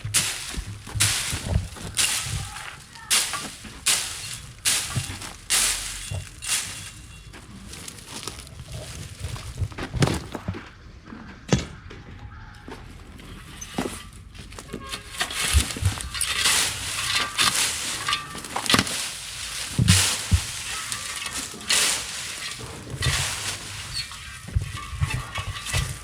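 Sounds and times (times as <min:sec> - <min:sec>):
dry leaves rustling: 0:00.0 - 0:10.6, 0:12.8 - 0:26.0
scattered thuds: 0:00.0 - 0:10.6, 0:13.7 - 0:26.0
twigs snapping: 0:14.4 - 0:26.0.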